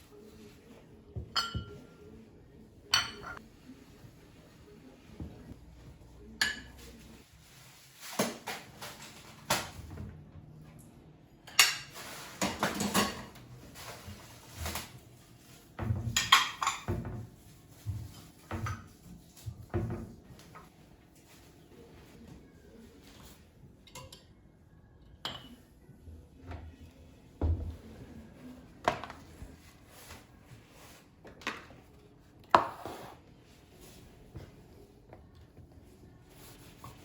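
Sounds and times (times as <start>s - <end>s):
dishes and cutlery clinking: 1.2s - 2.2s, 2.8s - 3.4s, 6.4s - 7.1s, 11.4s - 14.9s, 15.8s - 20.1s, 23.8s - 24.4s, 25.2s - 25.7s.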